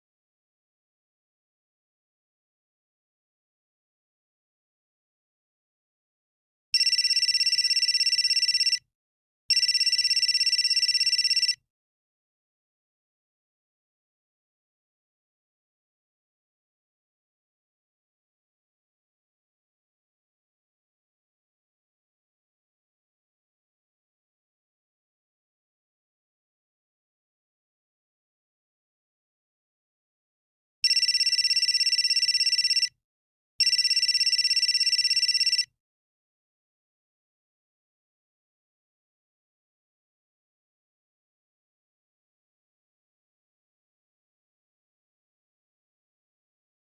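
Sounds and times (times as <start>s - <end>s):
cell phone ringing: 6.8s - 8.8s, 9.5s - 11.6s, 30.8s - 33.0s, 33.6s - 35.7s.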